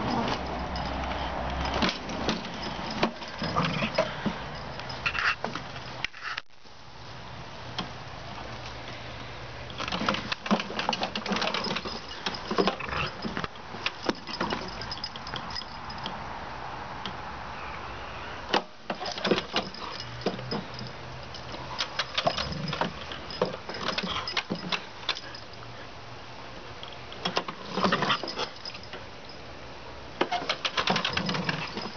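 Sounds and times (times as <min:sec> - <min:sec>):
metallic clicking and jingling: 0:00.0 - 0:06.1, 0:09.7 - 0:16.2, 0:18.9 - 0:25.8, 0:26.8 - 0:29.6, 0:30.2 - 0:31.9.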